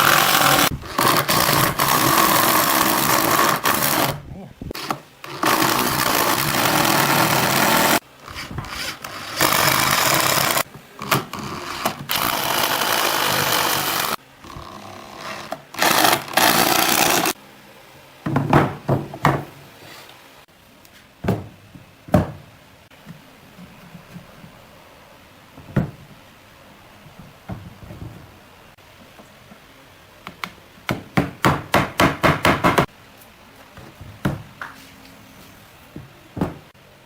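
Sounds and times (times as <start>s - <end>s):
woodworking power tool running: 0.0s - 4.2s, 4.8s - 17.4s.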